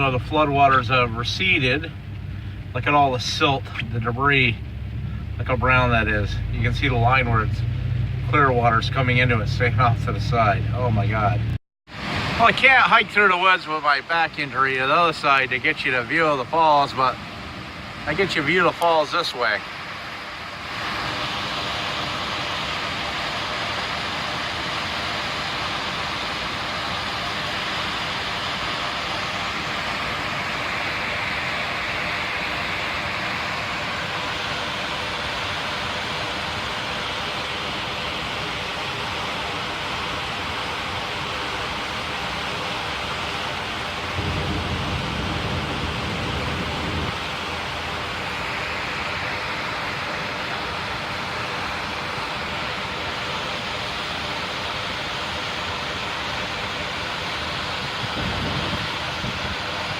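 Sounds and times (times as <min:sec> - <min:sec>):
low rumble: 0:00.1 - 0:11.6, 0:44.0 - 0:48.4
water rushing over waterfall: 0:11.9 - 0:59.9.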